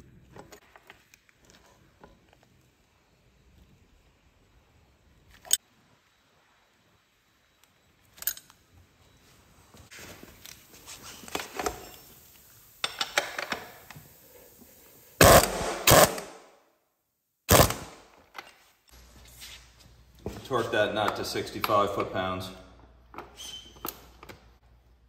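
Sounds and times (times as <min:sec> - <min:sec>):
metal tool clicks and rattling: 0:08.1 - 0:08.6.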